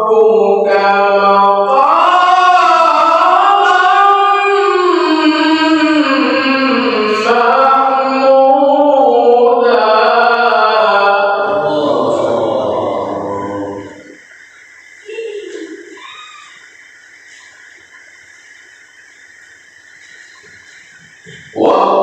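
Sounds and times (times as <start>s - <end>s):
man reciting in melodic chant: 0.0s - 14.2s, 21.2s - 22.0s.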